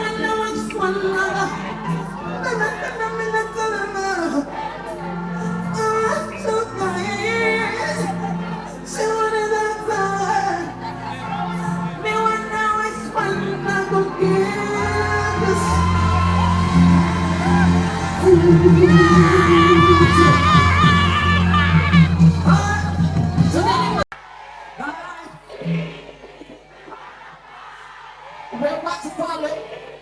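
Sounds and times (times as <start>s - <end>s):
keyboard chords: 0.0s - 24.1s
woman singing: 12.2s - 22.2s
deep bass: 14.7s - 24.1s.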